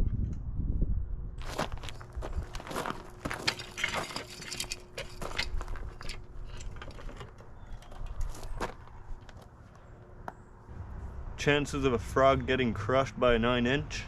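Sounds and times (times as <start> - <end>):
footsteps: 1.4 - 9.8
clicks knocks and crunches of handling: 1.5 - 9.5.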